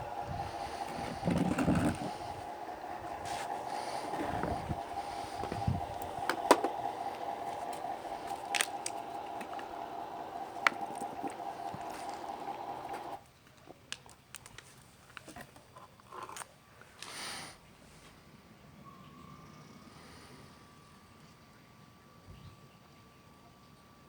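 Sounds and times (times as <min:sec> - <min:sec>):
model truck motor whining: 0:00.0 - 0:13.2.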